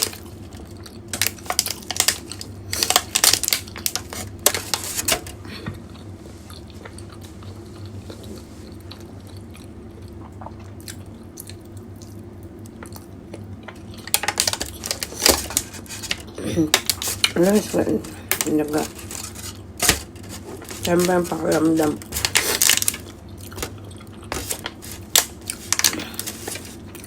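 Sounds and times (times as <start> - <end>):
chewing and mouth sounds: 0.0 - 4.1, 5.4 - 17.4, 22.0 - 27.0.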